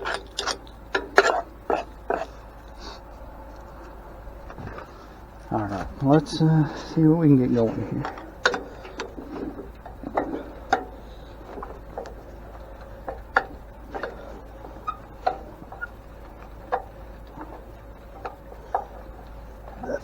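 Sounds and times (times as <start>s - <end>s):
hand tools clicking and tapping: 0.0s - 2.3s, 7.6s - 20.0s.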